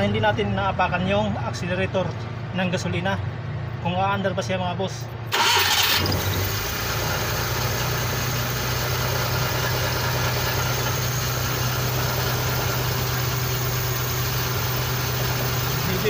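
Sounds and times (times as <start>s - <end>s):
engine starting and idling: 5.3s - 16.0s.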